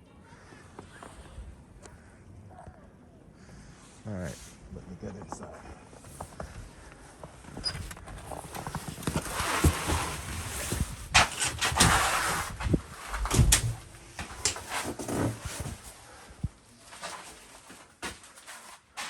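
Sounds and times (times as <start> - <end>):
door opening and shutting: 11.1 - 15.4
knocks and clatters: 13.1 - 15.4.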